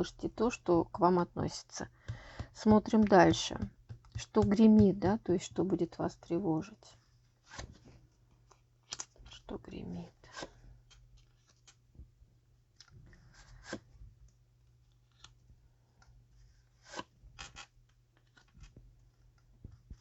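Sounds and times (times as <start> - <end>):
cards clicking and scraping: 10.2 - 11.8, 13.4 - 13.9, 16.8 - 18.8.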